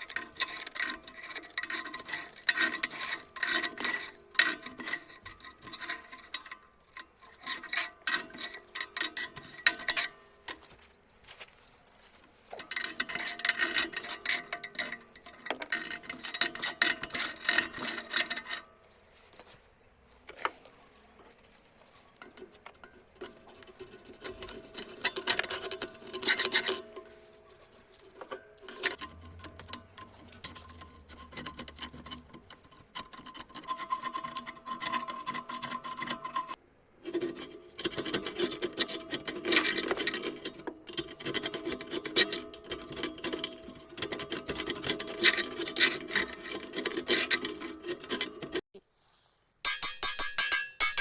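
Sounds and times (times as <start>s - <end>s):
abrasive scraping on steel: 22.2s - 36.6s.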